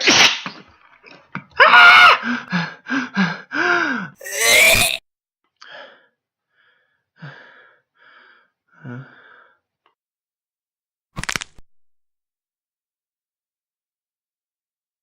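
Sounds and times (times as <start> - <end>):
wheezing gasping breaths: 2.2 - 4.3.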